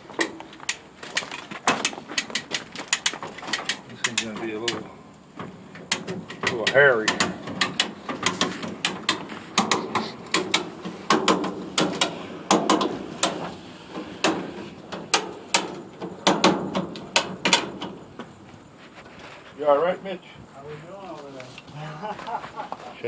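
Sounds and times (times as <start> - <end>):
ratchet lifting gear clicking: 0.2 - 18.4.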